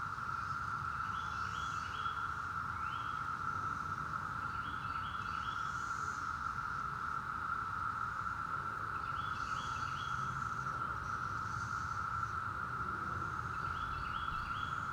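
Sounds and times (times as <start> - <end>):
cicada chorus drone: 0.0 - 14.9.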